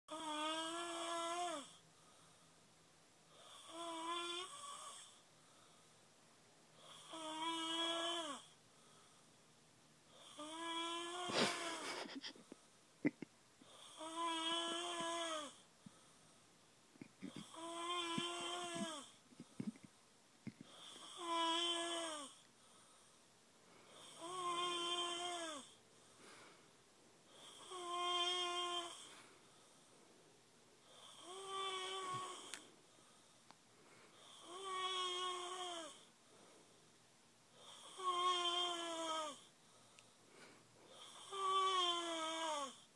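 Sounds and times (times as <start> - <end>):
high whining snoring: 0.1 - 1.8, 3.3 - 5.2, 6.8 - 8.6, 10.1 - 11.8, 13.1 - 15.7, 17.2 - 19.7, 23.9 - 25.8, 27.3 - 29.2, 30.8 - 32.7, 34.1 - 36.1, 37.5 - 39.5, 40.9 - 42.9.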